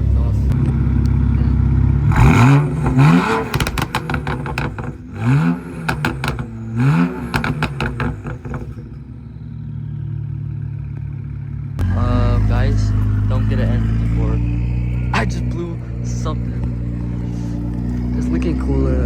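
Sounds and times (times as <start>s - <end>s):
car engine idling: 0.0s - 19.0s
car engine revving: 0.0s - 19.0s
exhaust crackling pops: 2.1s - 9.3s.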